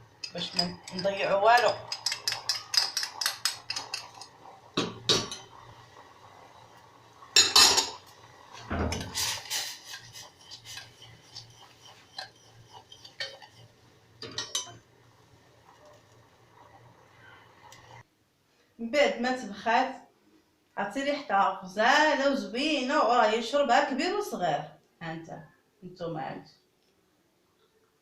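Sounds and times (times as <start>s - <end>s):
spoon stirring in a pot: 0.0s - 5.8s, 7.3s - 14.9s.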